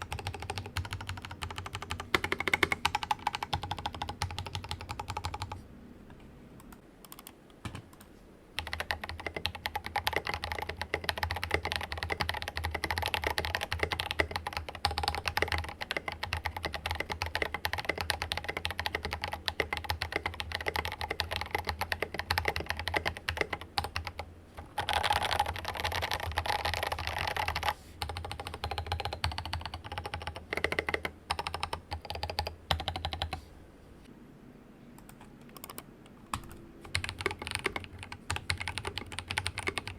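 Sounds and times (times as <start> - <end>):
typing on mechanical keyboard: 0.0 - 5.6, 8.6 - 33.4, 35.0 - 39.9.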